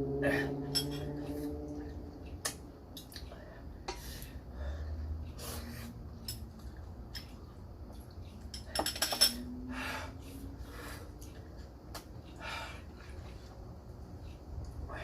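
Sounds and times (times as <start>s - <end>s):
utensils clinking against a dish: 0.5s - 1.2s, 8.4s - 9.5s.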